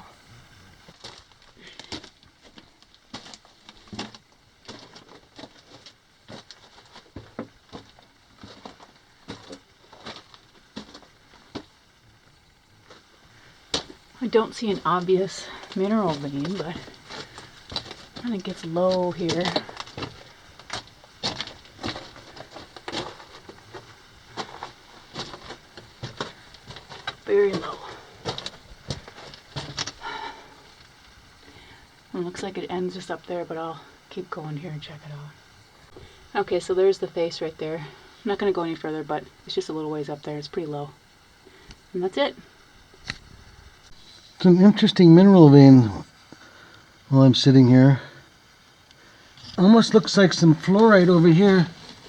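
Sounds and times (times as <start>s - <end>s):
footsteps crunching on gravel: 0.9s - 11.8s, 15.5s - 30.1s.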